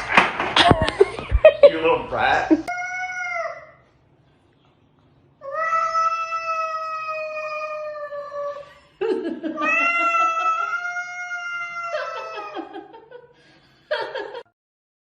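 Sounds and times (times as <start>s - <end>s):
cat yowling: 5.4s - 8.6s, 9.6s - 12.8s.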